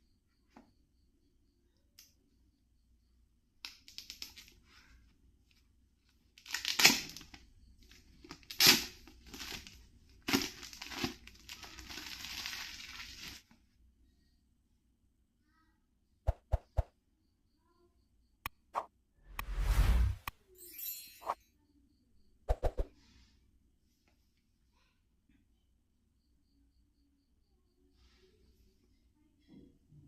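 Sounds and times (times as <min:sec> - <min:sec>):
packaging crackling and crinkling: 0:06.4 - 0:07.4, 0:08.2 - 0:13.4.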